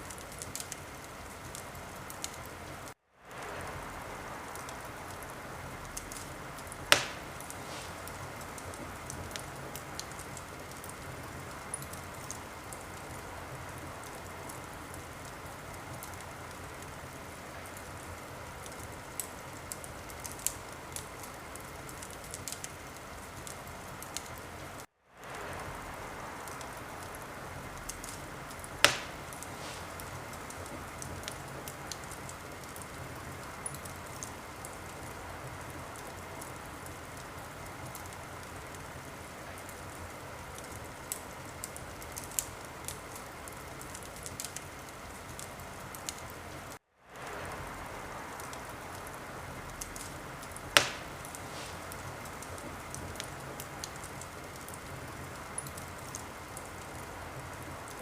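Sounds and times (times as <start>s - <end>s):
wood fire crackling: 0.0s - 58.0s
loud sharp pop of fire: 6.9s - 9.4s, 27.8s - 32.0s, 50.7s - 52.9s.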